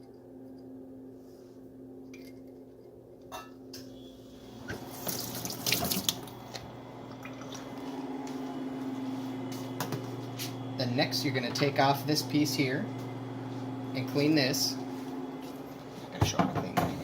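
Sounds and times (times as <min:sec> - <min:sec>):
steady low hum: 0:00.0 - 0:17.0
tap water running into sink: 0:04.7 - 0:06.4.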